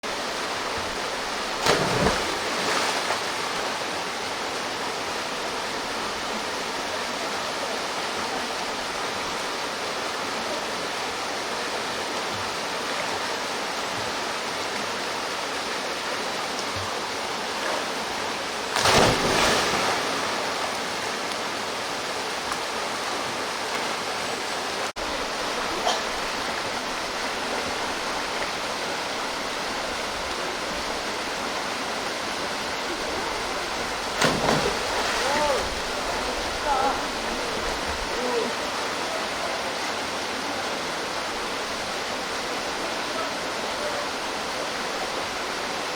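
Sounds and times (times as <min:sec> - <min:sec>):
waterfall rushing: 0:00.1 - 0:45.9
splashing: 0:01.6 - 0:03.4, 0:18.7 - 0:20.6, 0:34.0 - 0:37.7.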